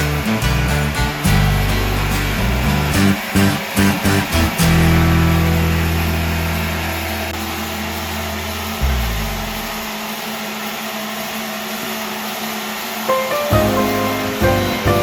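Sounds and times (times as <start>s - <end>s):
machine motor whirring: 7.3s - 12.0s
background music: 13.2s - 15.0s.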